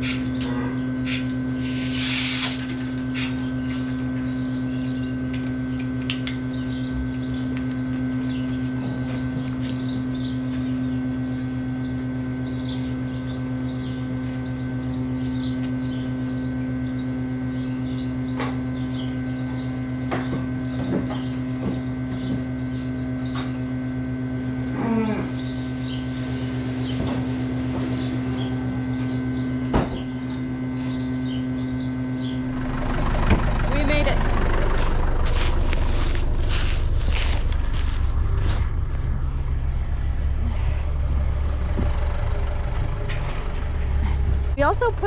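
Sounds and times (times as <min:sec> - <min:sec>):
tractor engine droning: 0:00.0 - 0:45.0
short hiss: 0:01.6 - 0:02.6.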